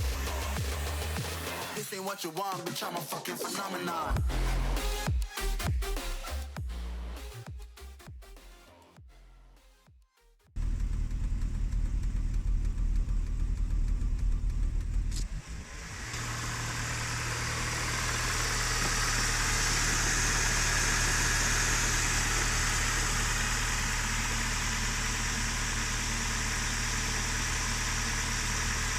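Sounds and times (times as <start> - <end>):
car engine idling: 10.6 - 28.9.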